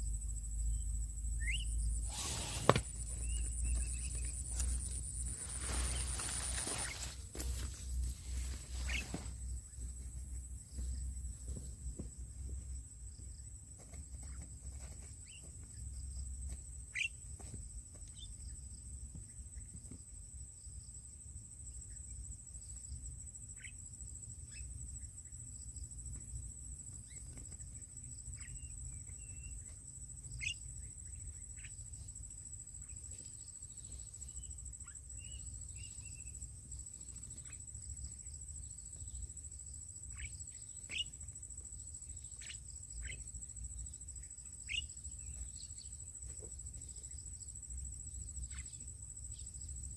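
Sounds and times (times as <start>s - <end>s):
bird chirps and calls: 1.4s - 4.4s, 8.8s - 9.2s, 16.9s - 17.1s, 40.1s - 41.1s, 42.4s - 43.2s, 44.6s - 45.4s.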